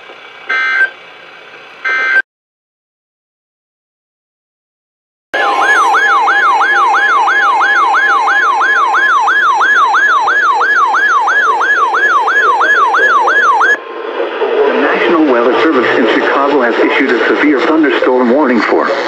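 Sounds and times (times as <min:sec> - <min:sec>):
yelping electronic siren: 0:00.5 - 0:00.9, 0:01.9 - 0:02.2, 0:05.4 - 0:14.0.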